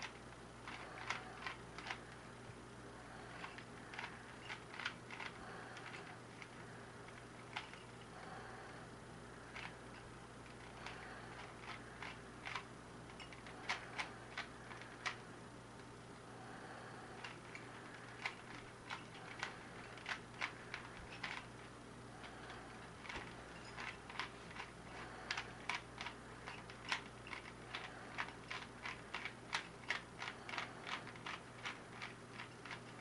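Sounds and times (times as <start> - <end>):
plastic puzzle cube clicking: 3.4 - 6.0.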